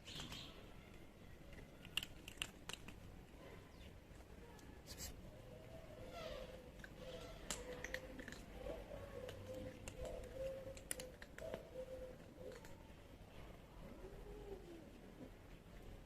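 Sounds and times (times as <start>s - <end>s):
kibble crunching: 0.0s - 3.4s, 6.7s - 12.8s.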